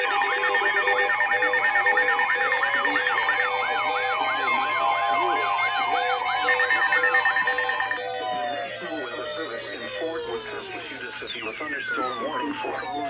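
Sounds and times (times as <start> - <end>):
steady alert tones: 0.0 - 9.4
yelping siren sweep: 0.0 - 10.8
low pulsing beep: 0.4 - 8.5.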